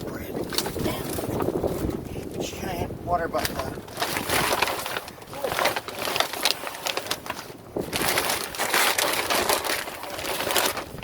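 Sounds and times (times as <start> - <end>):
plastic bags crinkling: 3.4 - 11.0.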